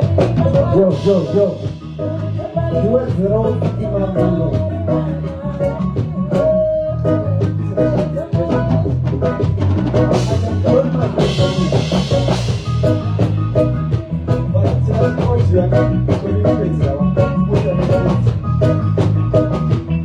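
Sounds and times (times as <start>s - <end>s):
bass guitar: 0.0s - 20.0s
drum kit beat: 0.0s - 20.0s
guitar: 0.0s - 20.0s.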